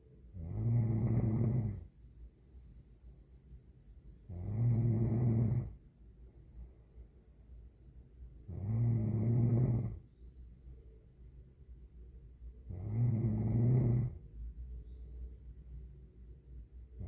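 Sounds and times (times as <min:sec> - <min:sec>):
woman snoring: 0:00.4 - 0:01.8, 0:04.4 - 0:05.8, 0:08.5 - 0:10.0, 0:12.7 - 0:14.2.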